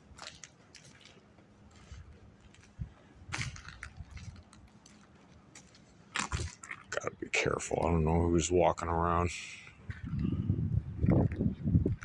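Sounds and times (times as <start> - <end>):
footsteps crunching on gritty floor: 0.0 - 8.0.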